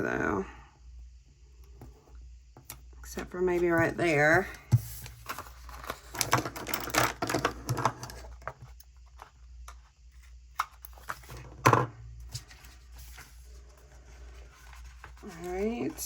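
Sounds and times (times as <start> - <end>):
paper rustling: 3.8 - 6.5, 12.2 - 16.0.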